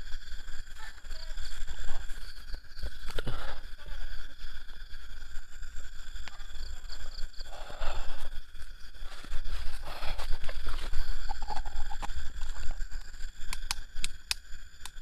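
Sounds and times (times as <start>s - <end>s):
flashlight switch clicking: 13.5s - 15.0s.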